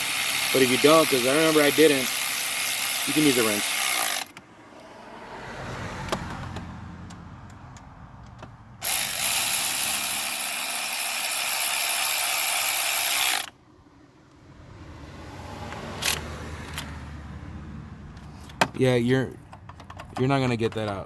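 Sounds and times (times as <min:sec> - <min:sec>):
ratchet clicking: 0:00.0 - 0:04.4, 0:08.8 - 0:13.6.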